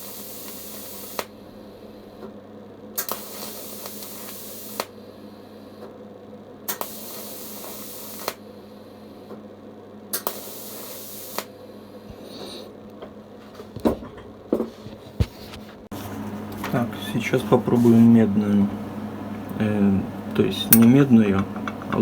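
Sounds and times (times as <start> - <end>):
welding arc hissing: 0.0 - 2.2, 3.0 - 5.2, 6.7 - 8.5, 10.1 - 12.7
welder click: 0.4 - 1.4, 3.0 - 4.9, 6.7 - 8.4, 10.1 - 11.5.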